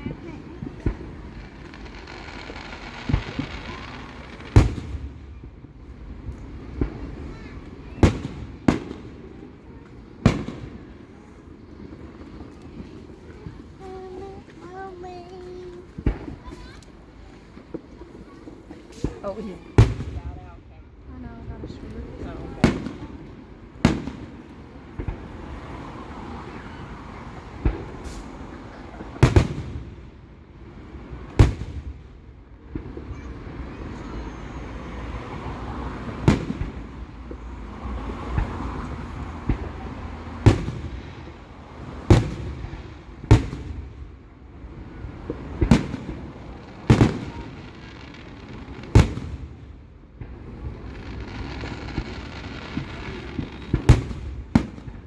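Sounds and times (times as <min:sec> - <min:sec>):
fireworks bangs: 0:00.0 - 0:55.0.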